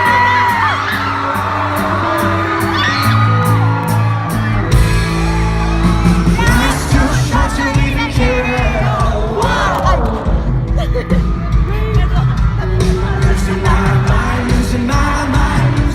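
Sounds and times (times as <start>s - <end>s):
audience whooping: 0.0s - 7.8s
heavy bass: 0.0s - 15.9s
live band music with singing: 0.0s - 15.9s.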